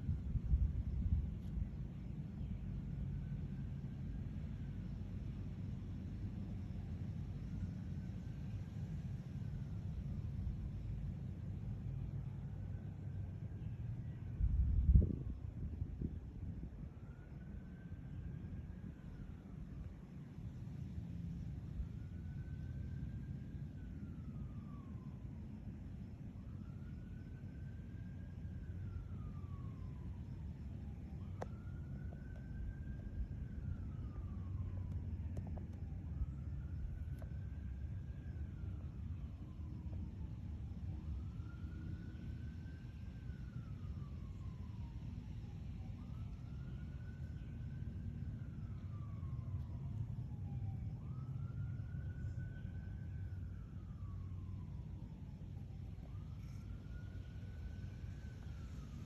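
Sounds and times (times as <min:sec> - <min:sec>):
steady low rumble: 0:00.0 - 0:59.0
siren wailing: 0:26.6 - 0:45.0, 0:45.8 - 0:59.0.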